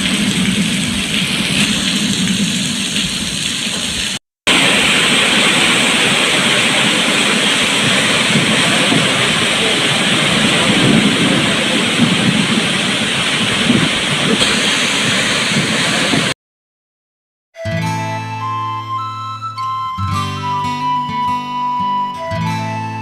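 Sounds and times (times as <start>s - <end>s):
waterfall rushing: 0.0s - 16.4s.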